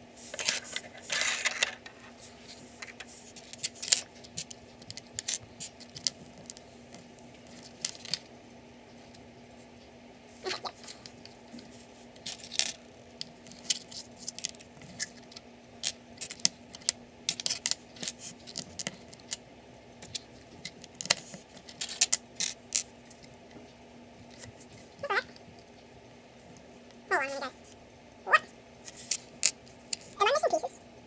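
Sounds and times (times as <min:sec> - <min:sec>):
cat meowing: 0:28.3 - 0:28.5.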